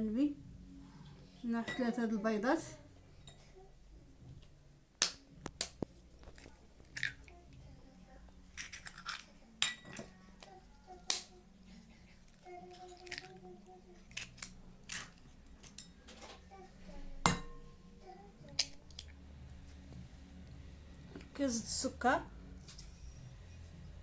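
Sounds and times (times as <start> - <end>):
eggs cracking against bowl: 5.0 - 7.3, 8.5 - 11.4, 12.9 - 13.4, 14.0 - 16.0, 18.5 - 19.2.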